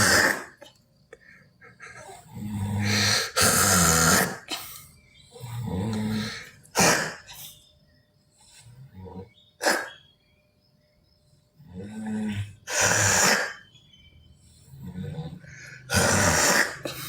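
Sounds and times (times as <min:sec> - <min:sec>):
person snoring loudly: 0:00.0 - 0:00.6, 0:02.0 - 0:04.5, 0:11.8 - 0:13.6, 0:14.8 - 0:17.0.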